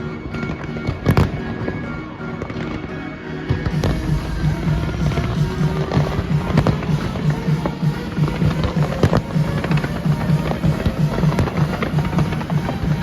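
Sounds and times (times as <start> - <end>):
music with pulsing bass beat: 0.0 - 13.0
fireworks bangs: 3.6 - 13.0.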